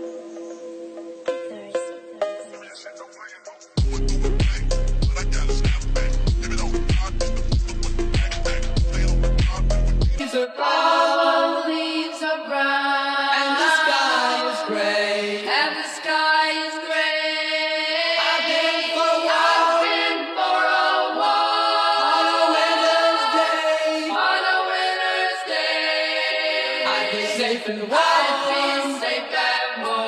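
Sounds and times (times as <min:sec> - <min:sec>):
choir singing long notes: 0:10.2 - 0:30.0.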